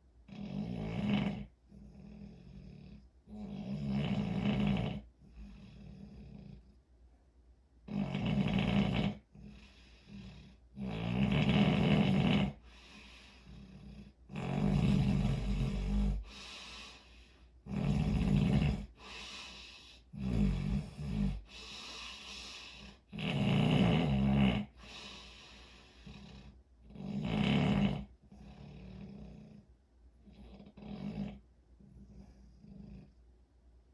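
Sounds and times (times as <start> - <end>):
person snoring loudly: 0.3 - 6.6, 7.9 - 9.5, 10.1 - 12.7, 13.4 - 16.5, 17.7 - 19.2, 20.1 - 25.3, 26.0 - 29.6
quiet breathing: 1.2 - 7.4, 8.4 - 10.9, 11.5 - 33.9.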